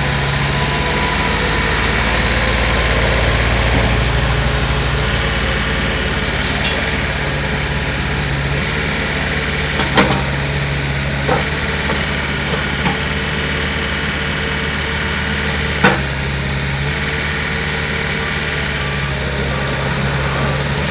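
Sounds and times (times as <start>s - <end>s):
excavator diesel engine idling: 0.0s - 20.9s
short hisses: 4.6s - 5.1s, 6.2s - 6.9s.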